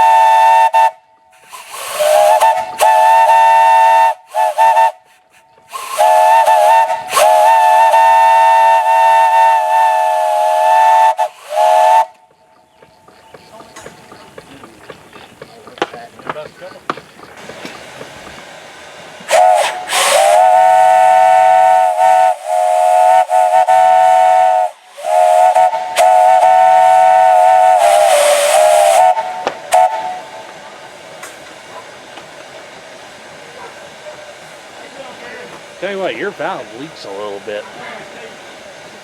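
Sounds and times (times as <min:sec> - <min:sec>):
three-chime steam whistle: 0:00.0 - 0:12.2, 0:19.3 - 0:30.5
rush of steam hiss: 0:00.0 - 0:39.0
faint hiss from leaking valve: 0:01.3 - 0:03.2, 0:04.3 - 0:12.0.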